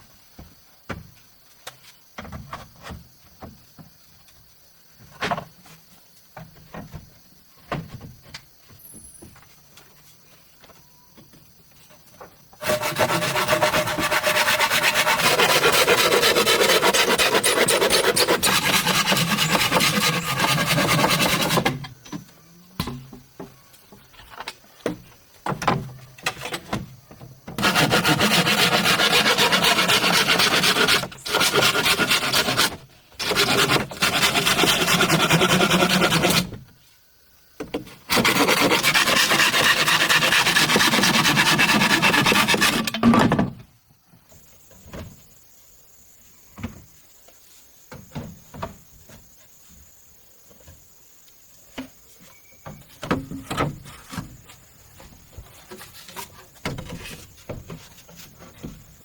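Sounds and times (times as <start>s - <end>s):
hand tool rasping on bamboo: 12.6s - 21.8s, 27.6s - 36.5s, 38.1s - 42.9s.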